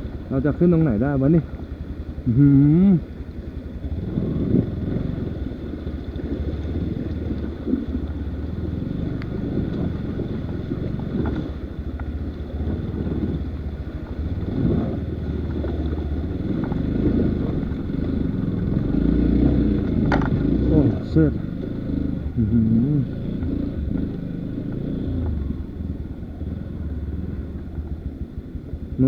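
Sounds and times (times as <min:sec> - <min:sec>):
dirt bike engine idling: 0:00.0 - 0:29.0
wind on microphone: 0:03.8 - 0:22.7.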